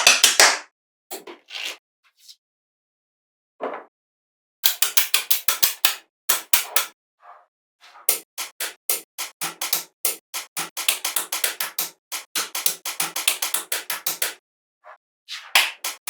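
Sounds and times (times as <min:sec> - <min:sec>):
rapid sharp clicks: 0:08.1 - 0:14.4, 0:15.6 - 0:16.0.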